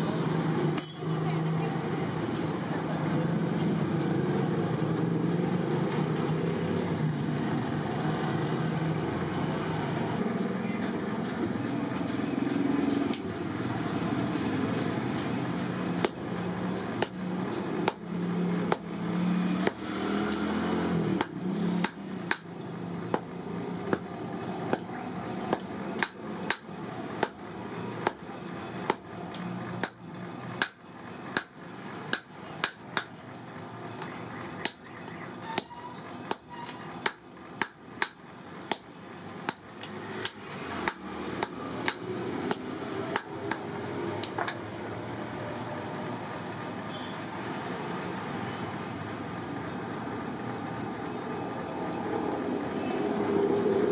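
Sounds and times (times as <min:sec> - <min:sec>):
hammer on steel anvil: 0:00.8 - 0:01.1, 0:21.2 - 0:23.3, 0:25.5 - 0:28.3, 0:34.6 - 0:38.9, 0:39.5 - 0:43.6.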